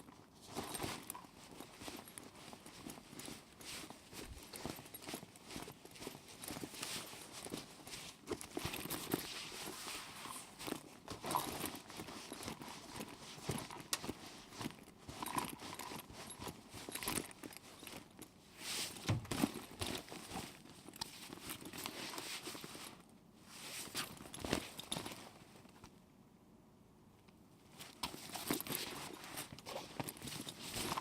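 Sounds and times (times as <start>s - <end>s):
backpack rattling while jogging: 0.4s - 9.7s, 10.3s - 18.2s, 28.1s - 31.0s.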